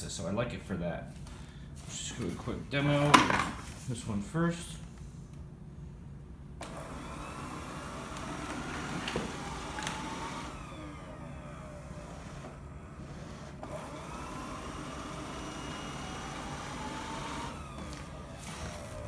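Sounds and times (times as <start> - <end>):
robot vacuum motor humming: 6.6 - 19.0.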